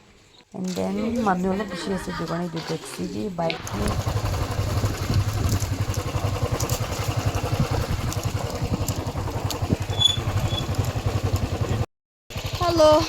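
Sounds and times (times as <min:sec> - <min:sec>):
motorcycle engine running: 0:03.6 - 0:13.0.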